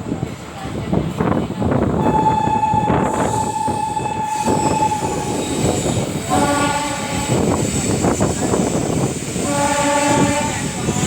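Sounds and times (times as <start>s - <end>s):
train rumbling on track: 0.0s - 11.0s
multi-tone train horn: 2.0s - 7.6s, 9.4s - 11.0s
train horn blast: 2.0s - 7.6s, 9.4s - 10.7s.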